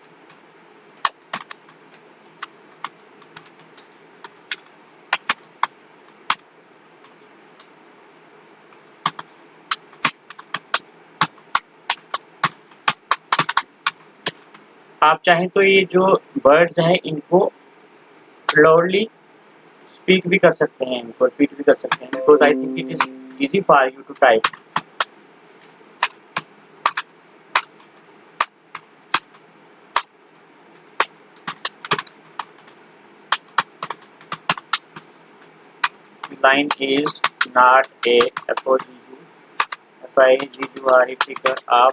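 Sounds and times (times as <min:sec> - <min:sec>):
keyboard typing: 0:21.9 - 0:23.4
computer keyboard typing: 0:38.2 - 0:38.5.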